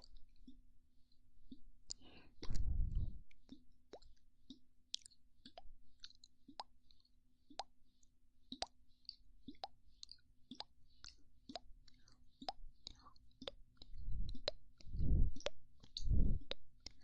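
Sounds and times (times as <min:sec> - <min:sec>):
soft mouth clicks: 0:01.5 - 0:17.0
wet mouth pops: 0:01.9 - 0:06.7, 0:09.5 - 0:11.7, 0:12.4 - 0:17.0.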